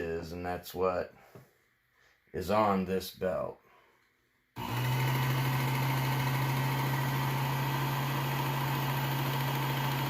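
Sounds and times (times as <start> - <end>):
belt sharpener motor humming: 4.6 - 10.0.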